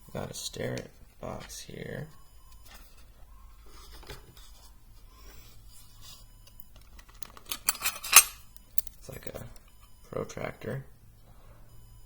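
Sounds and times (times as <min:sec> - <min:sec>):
tool box contents scraping: 0:06.9 - 0:08.4.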